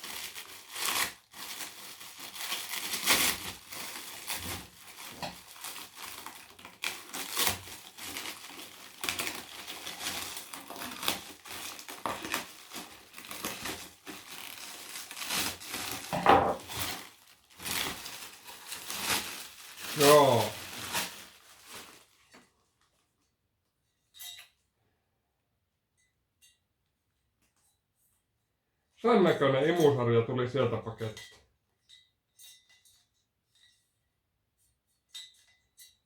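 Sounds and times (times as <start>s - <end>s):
packing material crinkling: 0.0s - 23.2s.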